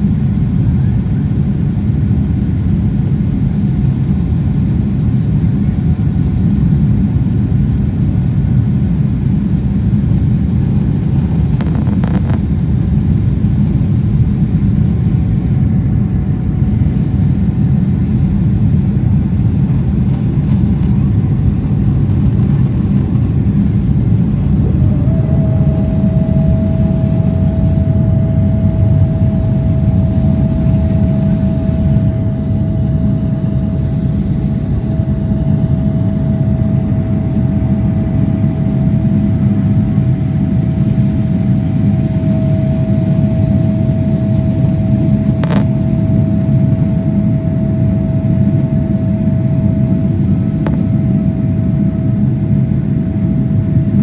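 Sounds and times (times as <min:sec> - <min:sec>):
loud low rumble: 0:10.5 - 0:52.3
steady whining tone: 0:10.9 - 0:13.3, 0:14.2 - 0:54.0.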